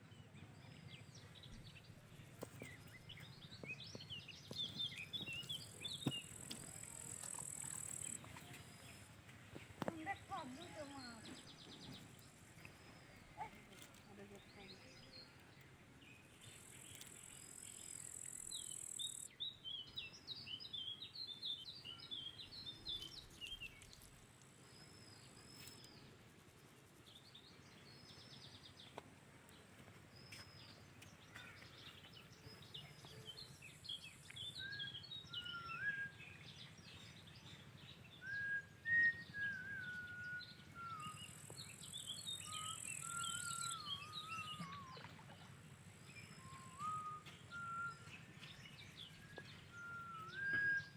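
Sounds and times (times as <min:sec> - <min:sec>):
birds chirping and twittering: 0:00.0 - 0:26.3, 0:27.0 - 0:50.9
whistled falling bird notes: 0:38.2 - 0:41.6, 0:42.4 - 0:45.1, 0:46.3 - 0:48.5, 0:49.7 - 0:50.9.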